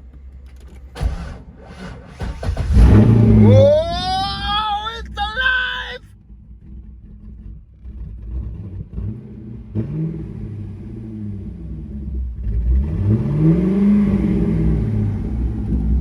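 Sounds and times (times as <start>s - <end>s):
car engine revving: 1.0s - 4.5s.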